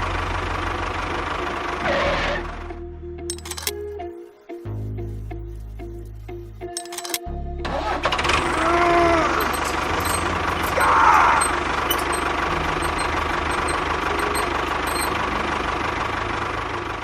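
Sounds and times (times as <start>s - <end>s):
small machine motor rattling: 3.3s - 3.8s, 6.7s - 7.2s, 8.3s - 17.0s
high squeal: 8.4s - 15.6s
squeaky gliding tones: 8.4s - 15.8s.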